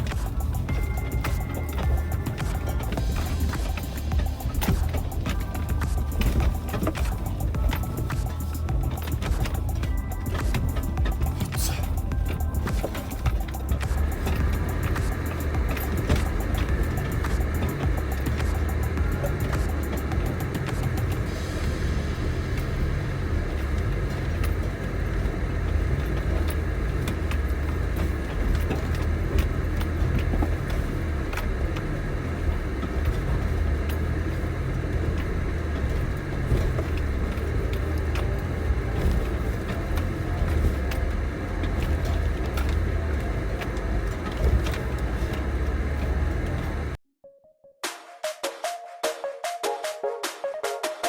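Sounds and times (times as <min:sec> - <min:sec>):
small ticks: 0:00.0 - 0:21.7
car engine and road rumble: 0:00.0 - 0:47.0.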